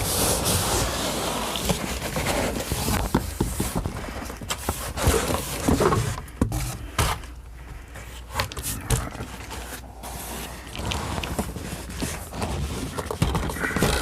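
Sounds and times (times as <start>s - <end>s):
cardboard rustling and scraping: 0.0s - 14.0s.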